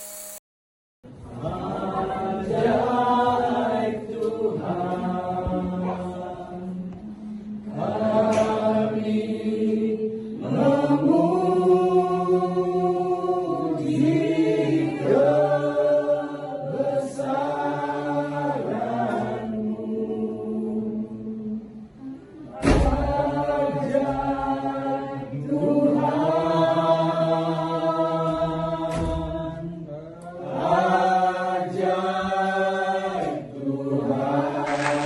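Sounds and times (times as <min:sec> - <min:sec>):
sharp thump: 0:22.6 - 0:23.1.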